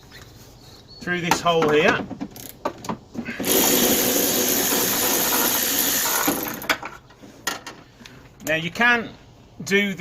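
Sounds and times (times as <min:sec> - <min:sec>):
power tool undoing bolt: 0:03.4 - 0:06.8.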